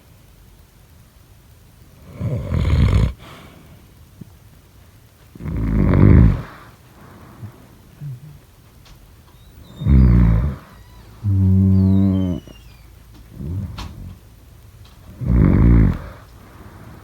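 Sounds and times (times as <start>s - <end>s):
person snoring: 2.0s - 3.6s, 5.4s - 8.4s, 9.7s - 12.7s, 13.3s - 14.2s, 15.1s - 17.0s
hum-like breath: 2.0s - 4.1s, 5.4s - 8.4s, 9.4s - 17.0s.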